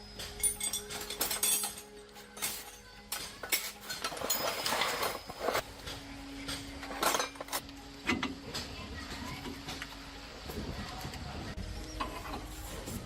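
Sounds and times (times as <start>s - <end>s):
metal tools clinking: 0.0s - 5.6s, 6.5s - 7.6s.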